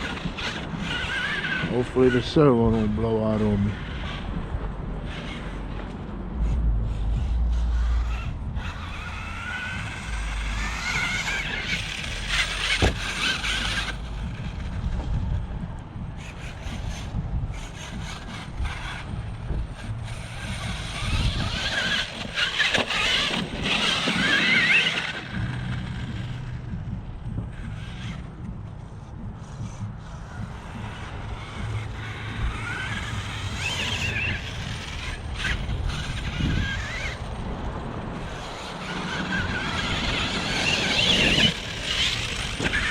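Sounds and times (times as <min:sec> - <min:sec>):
electric motor whining: 0:00.0 - 0:42.9
tyres rumbling over rough ground: 0:00.0 - 0:42.9.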